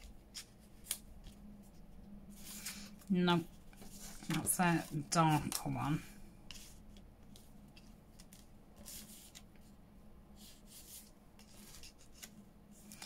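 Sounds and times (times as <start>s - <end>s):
paper rustling and clicking: 0.0s - 1.4s, 3.7s - 5.8s, 6.5s - 9.7s, 11.4s - 13.0s
low room hum: 0.0s - 13.0s
soft scrapes: 1.6s - 5.2s.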